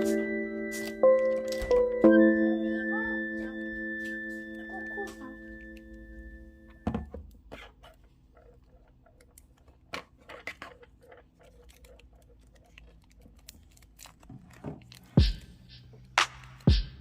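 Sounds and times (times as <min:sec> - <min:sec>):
paper folding crinkles: 0:00.0 - 0:02.0, 0:07.6 - 0:15.6.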